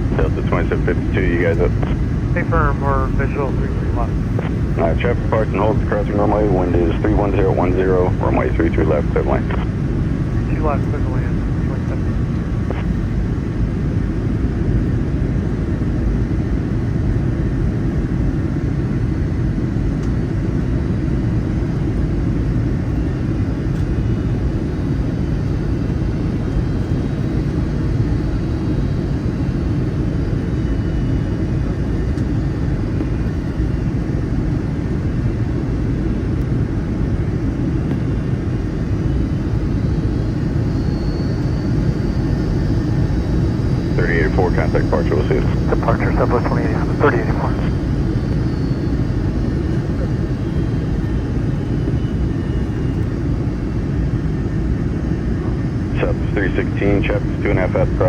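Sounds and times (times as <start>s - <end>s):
airplane cabin engine rumble: 0.0s - 58.0s.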